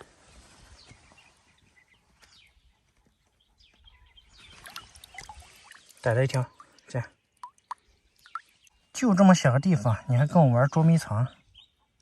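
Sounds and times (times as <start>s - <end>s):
hands splashing in a puddle: 4.5s - 8.6s.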